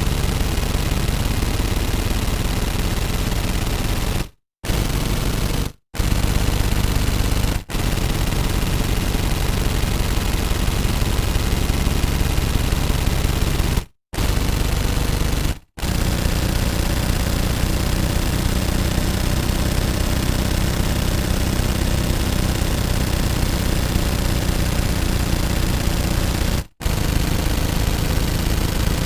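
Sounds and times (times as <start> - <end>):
automatic gunfire bursts: 0.0 - 29.0.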